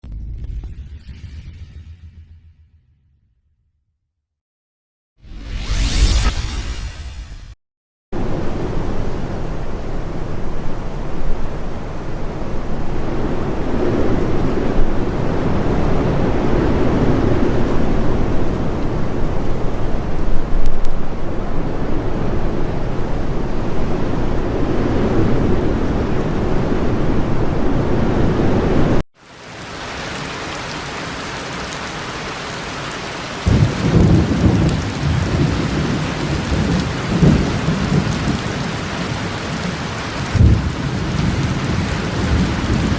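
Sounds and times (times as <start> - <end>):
thunder rumbling: 13.2 - 42.9
heavy rain pouring: 29.2 - 42.9.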